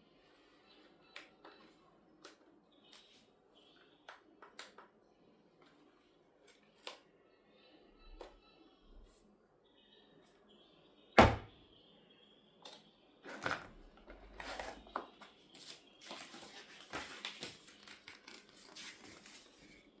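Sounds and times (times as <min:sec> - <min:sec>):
loud thunk: 0:11.2 - 0:11.5.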